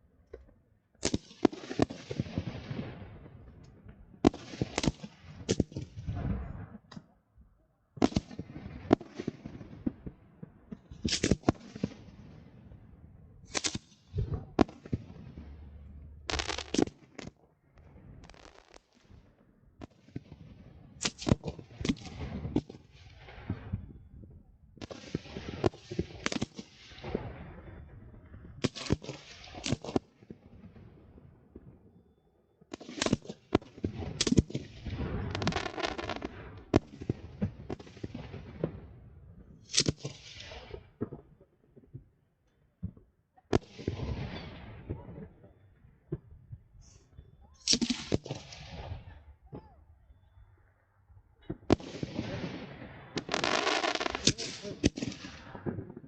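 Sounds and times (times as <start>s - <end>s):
fireworks bangs: 0.4s - 7.0s, 8.0s - 24.1s, 32.7s - 39.0s, 42.9s - 49.9s, 51.4s - 56.0s
fireworks crackling: 1.0s - 3.2s, 4.2s - 6.6s, 10.7s - 12.2s, 13.5s - 19.1s, 21.0s - 23.8s, 32.7s - 38.8s, 46.8s - 49.0s, 51.6s - 56.0s.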